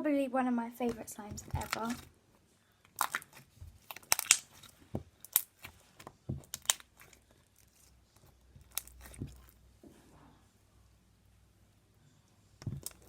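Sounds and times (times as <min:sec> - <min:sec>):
slime squeezed with crackling pops: 0:03.0 - 0:05.8, 0:06.4 - 0:07.1.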